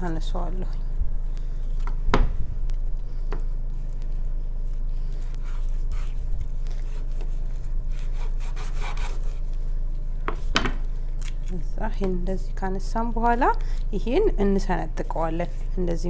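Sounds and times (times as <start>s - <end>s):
steady low hum: 0.0s - 16.0s
knife scraping raw chicken: 7.9s - 9.5s.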